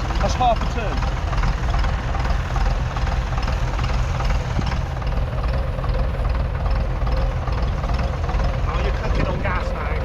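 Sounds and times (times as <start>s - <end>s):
diesel tractor engine under load: 0.0s - 10.0s.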